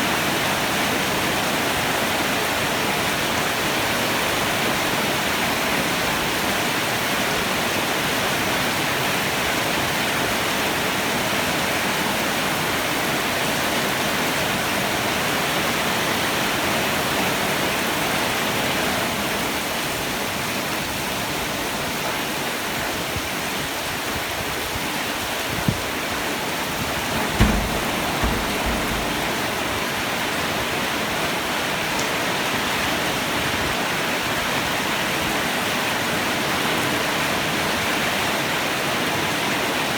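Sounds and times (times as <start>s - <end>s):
heavy rain pouring: 26.9s - 30.0s
low thumps: 27.0s - 29.7s.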